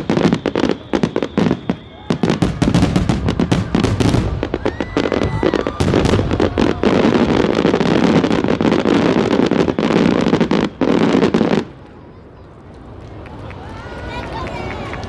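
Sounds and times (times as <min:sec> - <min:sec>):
fireworks bursts banging: 0:00.0 - 0:12.9
fireworks crackling: 0:00.0 - 0:15.0.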